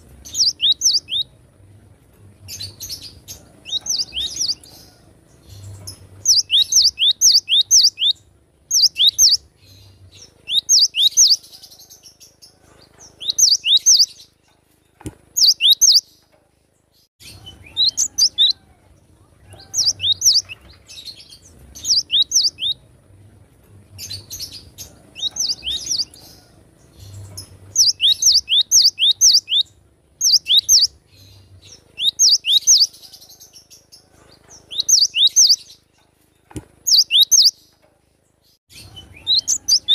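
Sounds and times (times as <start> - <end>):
bird singing whistled notes: 0.3 - 1.3, 5.6 - 9.8, 10.4 - 11.4, 13.2 - 14.3, 15.4 - 16.1, 19.6 - 20.6, 21.2 - 22.8, 25.2 - 26.5, 27.1 - 31.0, 31.6 - 33.0, 34.7 - 35.8, 36.8 - 37.6, 38.8 - 39.9.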